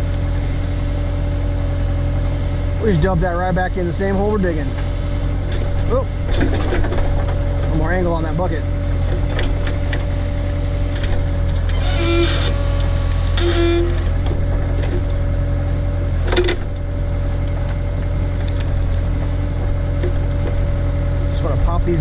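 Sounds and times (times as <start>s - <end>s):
backhoe engine running: 0.0s - 22.0s
hissing squeals: 11.2s - 14.2s.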